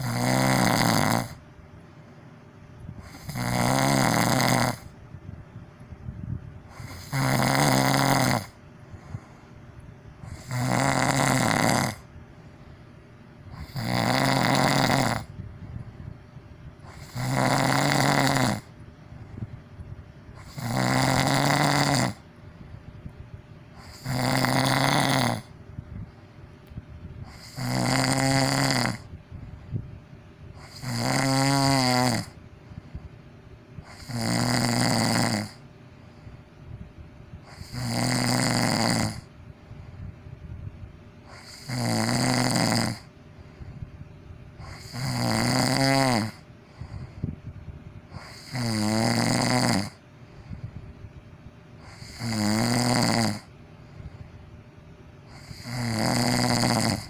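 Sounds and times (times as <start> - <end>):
person snoring loudly: 0.0 - 1.4, 3.0 - 5.0, 6.7 - 9.3, 10.2 - 12.1, 13.5 - 15.4, 16.8 - 18.8, 20.4 - 22.2, 23.8 - 25.5, 27.2 - 29.2, 30.6 - 32.4, 33.8 - 35.6, 37.4 - 39.4, 41.3 - 43.1, 44.6 - 47.3, 48.1 - 50.0, 51.8 - 53.5, 55.3 - 57.0
faint breathing: 8.4 - 10.8, 11.8 - 24.2, 25.3 - 27.7, 28.9 - 30.9, 32.2 - 34.2, 35.4 - 41.7, 42.9 - 45.1, 46.3 - 48.6, 49.4 - 52.2, 53.4 - 57.0.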